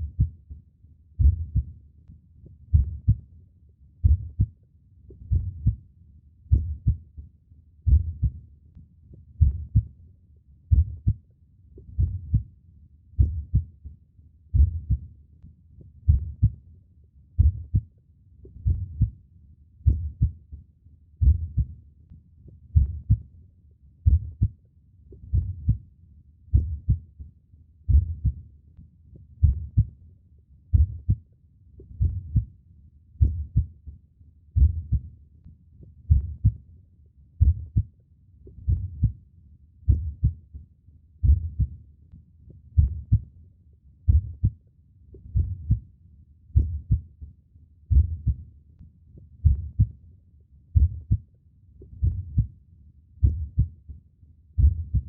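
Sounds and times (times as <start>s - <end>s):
human heartbeat: 0.0s - 0.5s, 1.2s - 1.8s, 2.4s - 3.3s, 4.0s - 5.8s, 6.5s - 7.2s, 7.8s - 8.5s, 9.1s - 10.0s, 10.7s - 12.5s, 13.1s - 15.2s, 15.8s - 16.6s, 17.4s - 19.2s, 19.8s - 20.6s, 21.2s - 21.8s, 22.5s - 23.3s, 24.0s - 25.8s, 26.5s - 27.2s, 27.9s - 28.5s, 29.2s - 30.0s, 30.7s - 32.5s, 33.2s - 33.9s, 34.5s - 35.1s, 35.8s - 36.7s, 37.4s - 39.2s, 39.8s - 40.5s, 41.2s - 41.8s, 42.5s - 43.3s, 44.1s - 44.6s, 45.2s - 45.9s, 46.5s - 47.2s, 47.9s - 48.5s, 49.2s - 50.0s, 50.8s - 52.6s, 53.2s - 54.0s, 54.6s - 55.0s.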